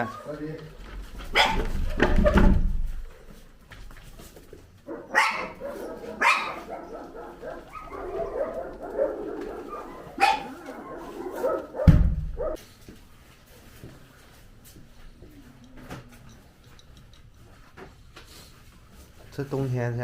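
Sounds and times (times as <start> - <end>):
dogs barking: 1.2 - 2.4, 4.8 - 12.6
loud low thump: 11.8 - 12.5.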